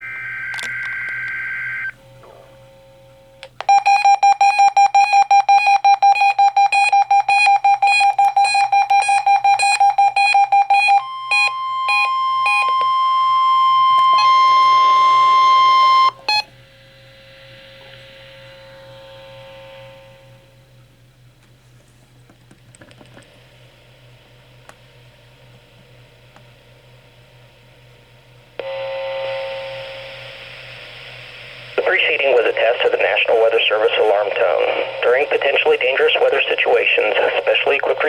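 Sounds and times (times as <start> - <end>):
steady warning alarm tone: 0.0 - 2.0, 3.7 - 16.5, 31.8 - 38.0
faint radio hiss: 29.2 - 38.0
rapid beeping: 31.8 - 38.0.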